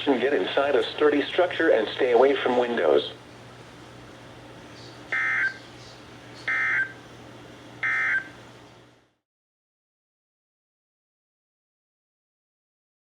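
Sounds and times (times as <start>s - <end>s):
faint steady hum: 0.0s - 9.2s
warbling data tone bursts: 5.1s - 5.6s.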